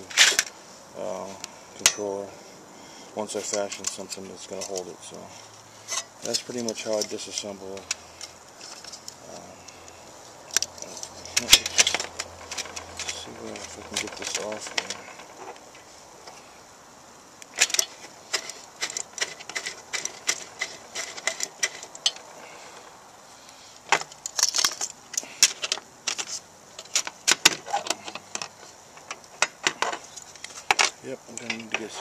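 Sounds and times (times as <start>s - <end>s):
metal stove parts clinking: 1.8s - 2.1s, 30.7s - 32.0s.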